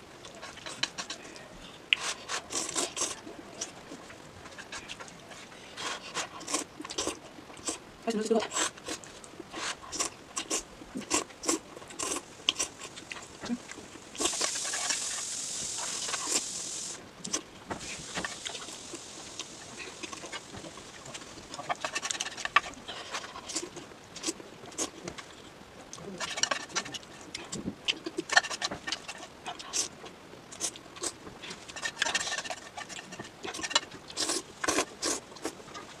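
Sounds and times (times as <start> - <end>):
wet chewing and mouth smacks: 8.5 - 16.5.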